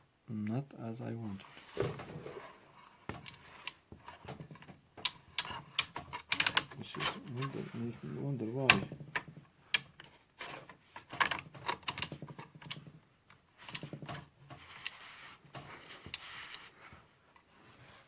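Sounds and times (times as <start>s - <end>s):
plastic clicks and rattles: 3.2s - 7.4s, 11.0s - 15.0s.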